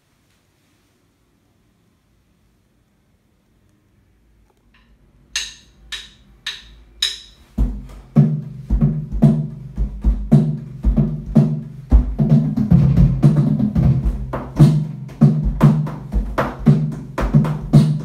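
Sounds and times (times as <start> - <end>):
drumsticks clicking together: 4.5 - 7.5
drum kit beat: 5.4 - 18.0.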